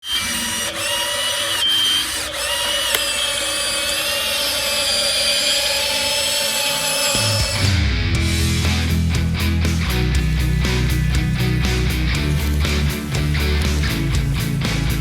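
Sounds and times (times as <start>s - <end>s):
small electric motor whining: 0.0s - 7.8s.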